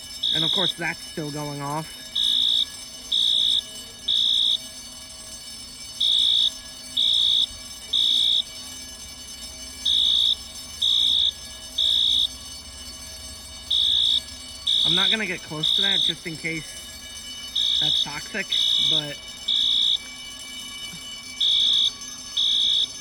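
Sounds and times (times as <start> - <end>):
fire alarm beeps: 0.0 - 23.0.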